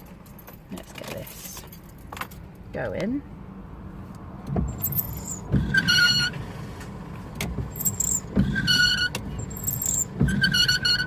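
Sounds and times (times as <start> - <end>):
windscreen wipers squealing: 4.5 - 11.0.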